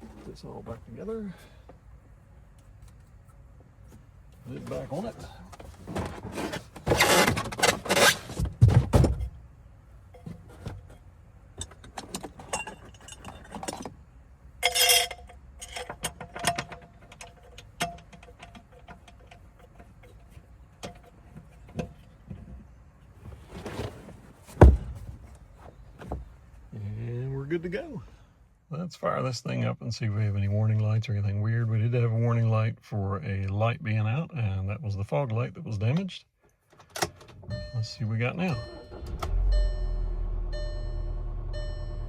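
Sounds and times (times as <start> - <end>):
gear clattering and rummaging: 3.9 - 9.4, 10.1 - 14.0, 14.6 - 26.6.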